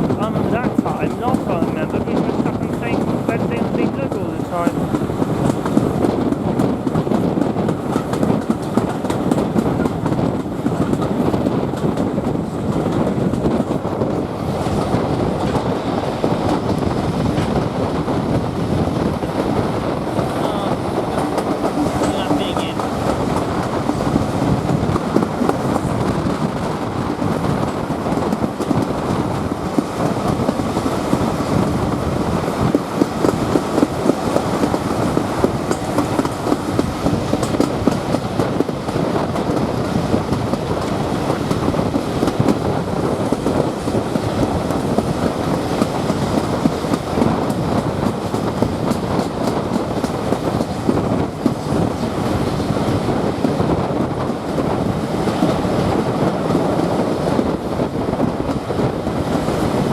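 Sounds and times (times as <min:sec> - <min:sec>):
train wheels rumbling on track: 0:00.0 - 0:59.9
clicking over rail joints: 0:19.0 - 0:52.0.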